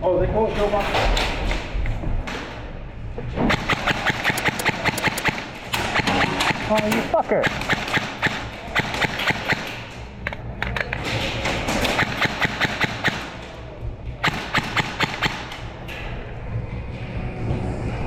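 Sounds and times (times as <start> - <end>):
airsoft guns firing: 3.4 - 15.8.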